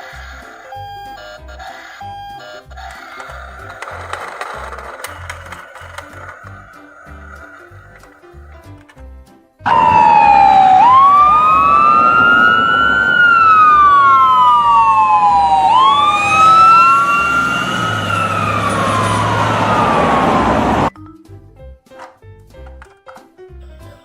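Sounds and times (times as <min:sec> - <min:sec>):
wailing emergency vehicle siren: 0:09.7 - 0:20.9.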